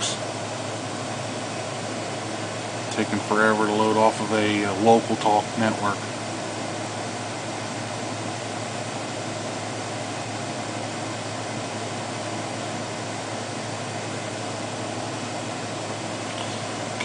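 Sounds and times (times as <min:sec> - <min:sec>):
machine hum and hiss: 0:00.0 - 0:17.0.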